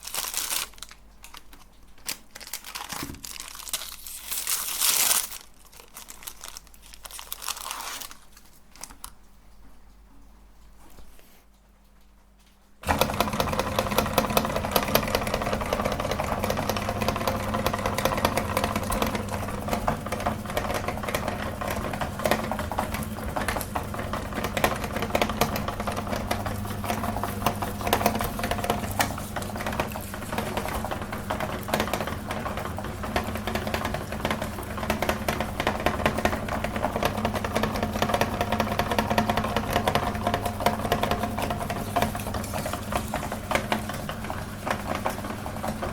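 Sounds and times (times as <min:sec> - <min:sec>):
electric meat grinder running: 0:12.8 - 0:45.9.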